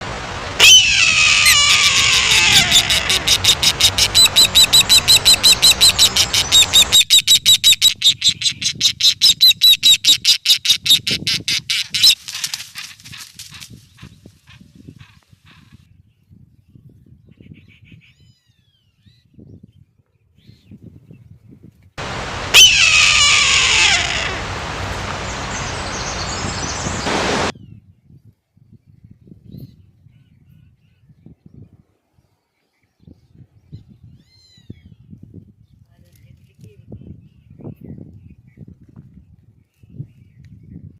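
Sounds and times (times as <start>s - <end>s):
recording hiss: 0.0s - 6.9s, 22.0s - 27.5s
hawk scream: 0.5s - 7.1s, 22.0s - 27.5s
eagle chattering call: 0.6s - 10.9s, 22.0s - 27.5s.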